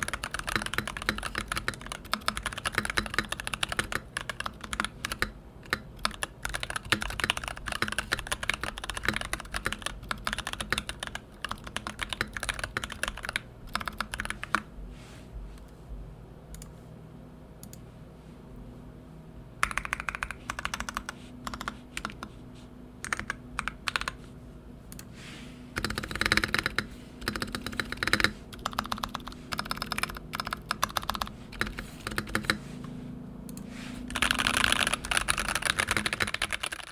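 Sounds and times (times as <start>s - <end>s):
typing on mechanical keyboard: 0.0s - 14.6s, 19.6s - 22.3s, 23.0s - 24.2s, 25.8s - 32.6s, 34.1s - 36.9s.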